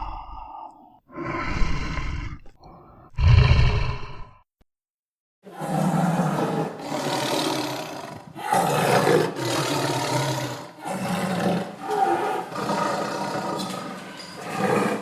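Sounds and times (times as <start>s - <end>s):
tiger roaring: 3.1s - 4.4s, 5.5s - 15.0s.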